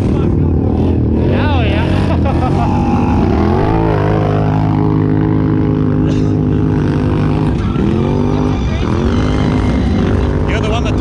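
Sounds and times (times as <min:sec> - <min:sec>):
atv engine revving: 0:00.0 - 0:11.0.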